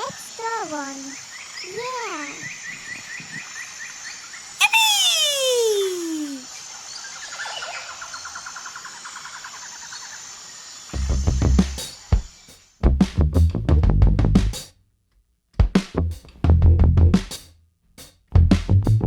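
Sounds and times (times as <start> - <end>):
cartoon chirping: 4.6 - 6.4
fast chirping trill: 4.6 - 6.4
descending whistle tone: 4.6 - 6.5
music with drum beat: 11.2 - 14.7, 15.6 - 19.0.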